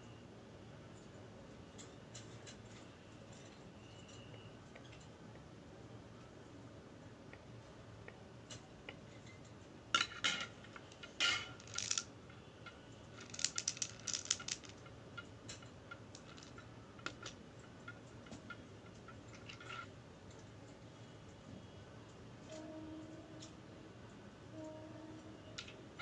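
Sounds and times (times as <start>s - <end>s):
small hard pieces clattering: 10.0s - 19.9s.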